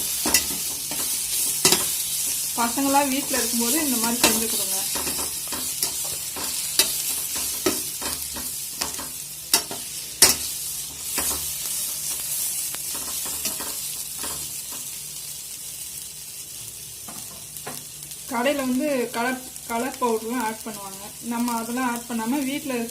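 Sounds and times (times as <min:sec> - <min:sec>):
food sizzling in oil: 0:00.0 - 0:22.9
spoon scraping and clinking on pan: 0:00.1 - 0:02.1, 0:04.1 - 0:12.3.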